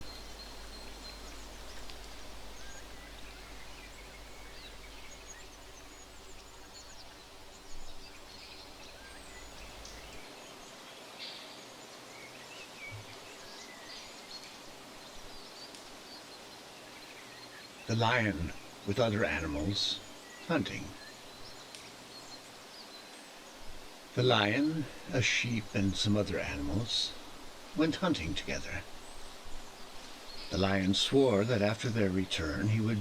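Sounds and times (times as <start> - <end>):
bird chirps and calls: 0.0 - 10.2
background hiss: 0.0 - 33.0.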